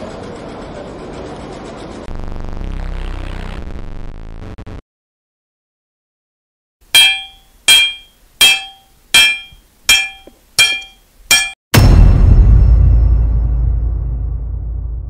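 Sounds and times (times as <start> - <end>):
sharp ringing strikes: 7.0 - 12.1
deep lingering boom: 11.8 - 15.0.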